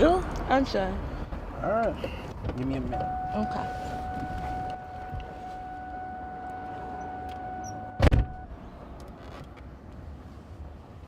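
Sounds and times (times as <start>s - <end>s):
car door shutting: 2.1s - 8.5s
car door warning tone: 2.7s - 8.5s.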